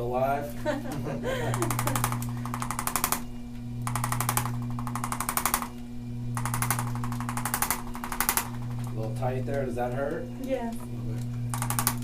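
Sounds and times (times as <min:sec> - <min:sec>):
steady motor hum: 0:00.0 - 0:12.0
percussion massager tapping: 0:01.5 - 0:03.2, 0:03.8 - 0:05.7, 0:06.4 - 0:09.0, 0:11.5 - 0:12.0.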